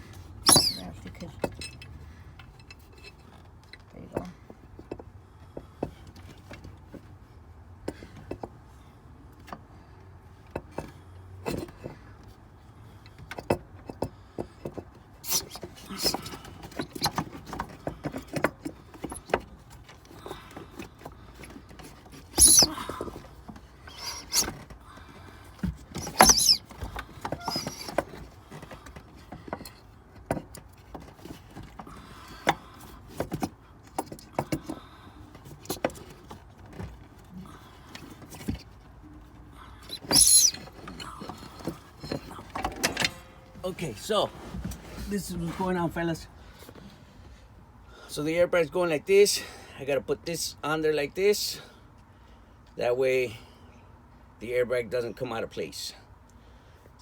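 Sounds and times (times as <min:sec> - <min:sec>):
hands and tools clicking and scraping: 0:00.0 - 0:07.2, 0:09.4 - 0:45.8.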